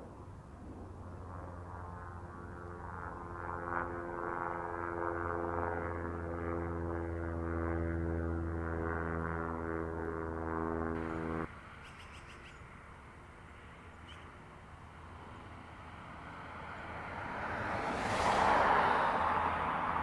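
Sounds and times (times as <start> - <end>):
steady humming drone: 5.0 - 11.7
vehicle passing by: 11.0 - 11.5, 15.6 - 20.0
faint bird chirps: 11.1 - 12.7, 13.8 - 14.4.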